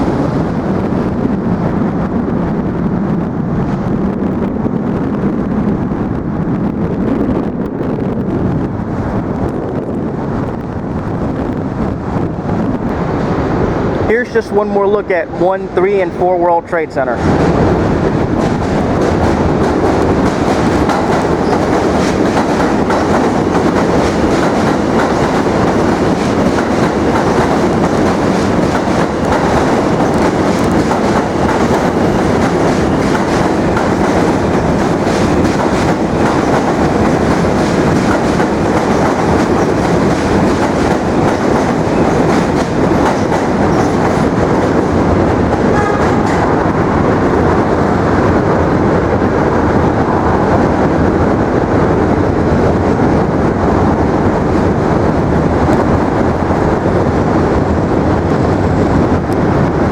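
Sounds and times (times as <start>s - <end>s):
train rumbling on rails: 0.0s - 59.9s
wheels clattering over track: 17.2s - 46.8s.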